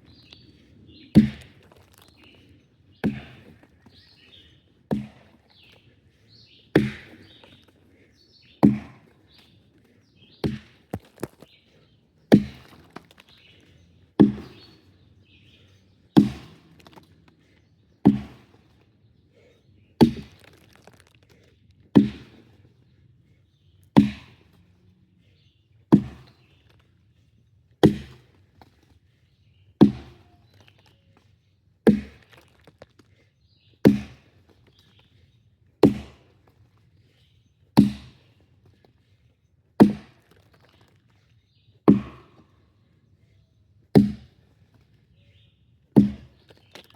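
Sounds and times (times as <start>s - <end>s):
faint birdsong: 0.0s - 46.9s
axe chopping wood: 1.1s - 2.4s, 3.0s - 3.6s, 4.9s - 5.8s, 6.7s - 7.6s, 8.6s - 9.5s, 10.4s - 11.5s, 12.3s - 14.8s, 16.2s - 18.6s, 20.0s - 21.1s, 21.9s - 22.5s, 24.0s - 24.5s, 25.9s - 26.8s, 27.8s - 28.4s, 29.8s - 30.9s, 31.8s - 33.1s, 33.8s - 34.4s, 35.8s - 36.3s, 37.8s - 38.3s, 39.8s - 41.0s, 41.9s - 42.4s, 43.9s - 44.4s, 46.0s - 46.9s.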